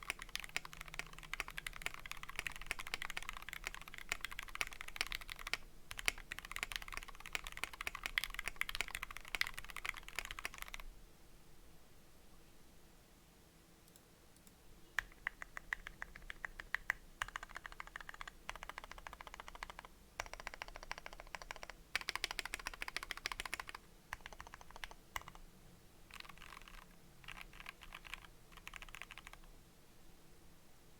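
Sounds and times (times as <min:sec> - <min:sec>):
mechanical keyboard typing: 0:00.0 - 0:10.8, 0:15.0 - 0:25.4, 0:26.1 - 0:29.5.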